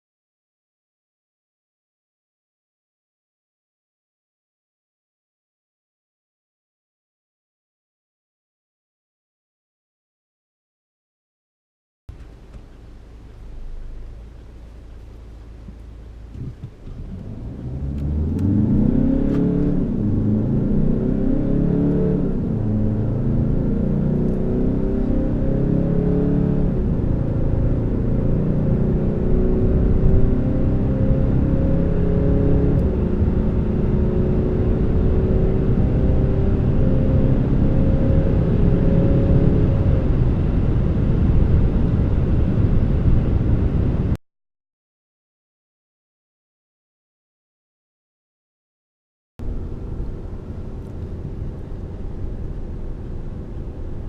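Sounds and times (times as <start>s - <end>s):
engine knocks: 12.1s - 17.3s
diesel engine accelerating: 12.1s - 44.2s, 49.4s - 54.0s
road noise: 12.1s - 44.2s, 49.4s - 54.0s.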